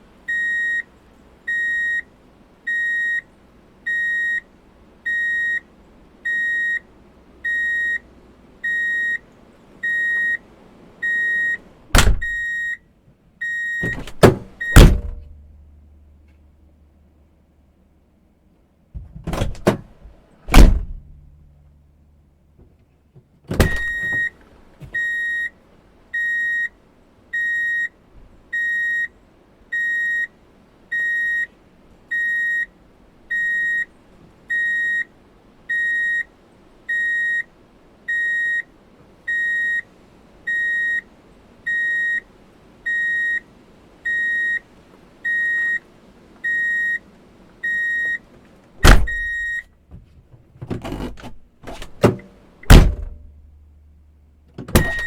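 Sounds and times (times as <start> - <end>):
reverse warning beeps: 0.3 - 0.9, 1.5 - 2.1, 2.7 - 5.7, 6.3 - 9.2, 9.8 - 10.4, 11.0 - 11.6, 12.2 - 12.8, 13.4 - 14.0, 14.6 - 14.8, 23.7 - 24.4, 25.0 - 32.7, 33.3 - 33.9, 34.5 - 35.1, 35.7 - 36.3, 36.9 - 37.5, 38.1 - 38.7, 39.3 - 39.9, 40.5 - 41.1, 41.7 - 45.8, 46.4 - 47.0, 47.6 - 48.2, 49.1 - 49.7
loud thump: 11.9 - 12.4, 13.8 - 15.4, 20.5 - 21.3, 23.5 - 24.3, 48.8 - 49.3, 51.7 - 53.4.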